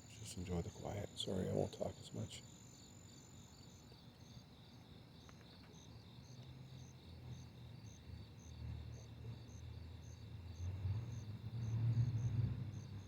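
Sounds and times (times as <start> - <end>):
distant road traffic rumble: 0.0 - 2.6, 6.5 - 13.0
cricket chirping: 0.0 - 13.0
insects trilling: 0.0 - 13.0.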